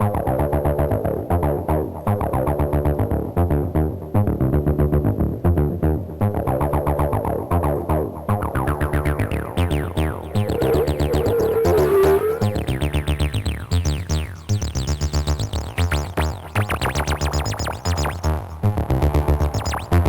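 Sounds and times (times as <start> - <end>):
distorted acid synth bassline: 9.3 - 20.0.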